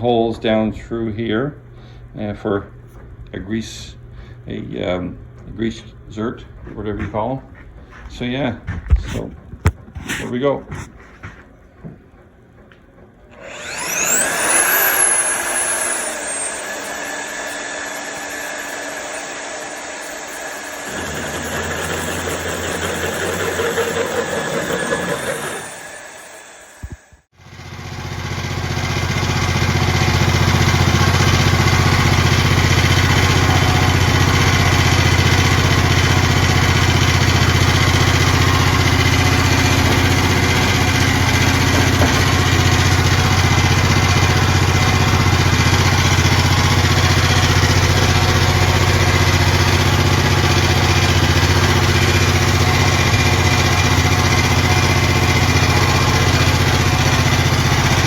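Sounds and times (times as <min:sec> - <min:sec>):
machine motor humming: 0:13.3 - 0:58.0.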